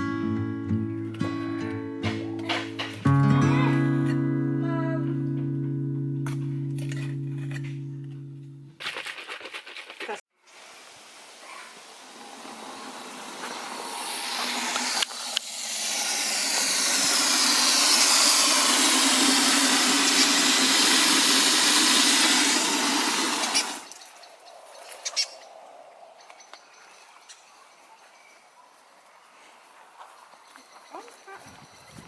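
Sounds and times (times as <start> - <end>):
running water rushing: 10.5 - 24.0.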